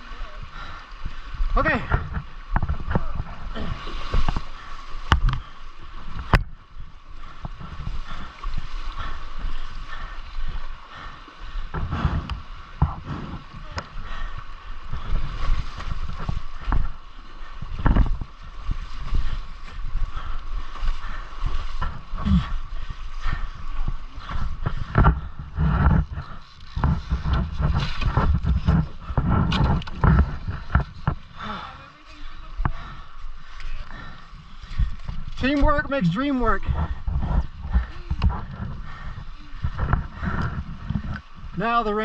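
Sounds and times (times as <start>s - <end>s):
rushing river water: 0.0s - 42.0s.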